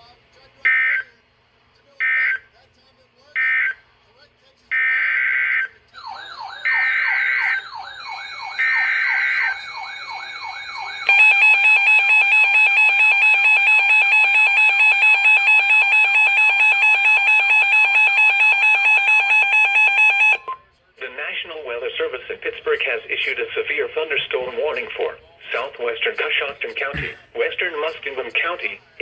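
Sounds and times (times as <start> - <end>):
two-tone alert signal: 6.0 - 20.6.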